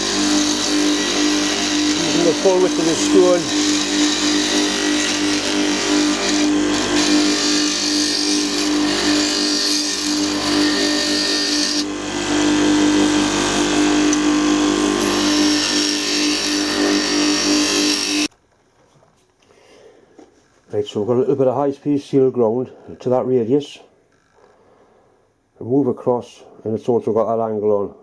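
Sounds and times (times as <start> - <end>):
metal grinding against stone: 0.0 - 11.9, 14.0 - 18.3
bench grinder motor humming: 0.0 - 18.3.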